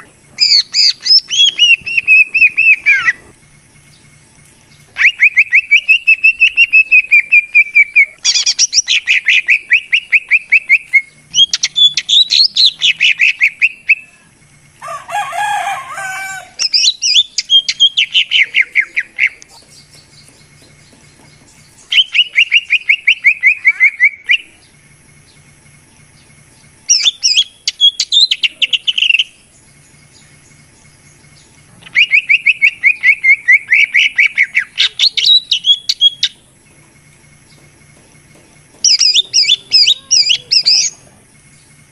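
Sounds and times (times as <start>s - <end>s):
harsh scratchy bird call: 0.0s - 3.4s, 4.9s - 14.2s, 14.8s - 24.6s, 31.8s - 36.4s, 38.8s - 41.0s
bird trilled whistles: 0.4s - 3.3s, 5.0s - 14.1s, 16.6s - 20.3s, 21.8s - 24.6s, 26.9s - 29.4s, 31.8s - 36.4s, 38.8s - 41.0s.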